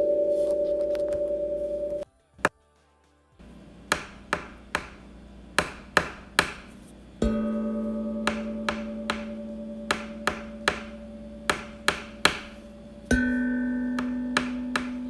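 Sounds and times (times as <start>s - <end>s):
ringing bell-like tone: 0.0s - 2.0s, 7.2s - 15.0s
sharp ringing knocks: 5.6s - 15.0s.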